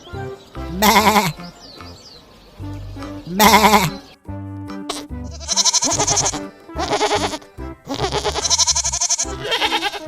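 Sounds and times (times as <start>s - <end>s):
background music: 0.0s - 10.0s
goats bleating: 0.7s - 1.4s, 2.9s - 4.0s, 4.9s - 10.0s.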